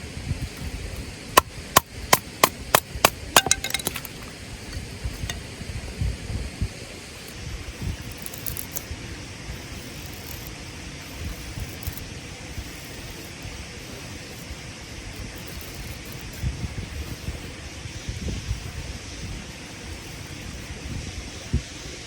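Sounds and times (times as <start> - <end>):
sharp knocks on wood: 2.4 - 4.1.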